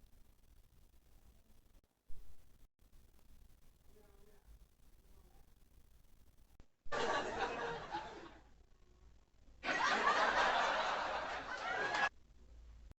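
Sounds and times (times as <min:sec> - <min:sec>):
group of people laughing: 0:06.9 - 0:08.5, 0:09.6 - 0:12.1.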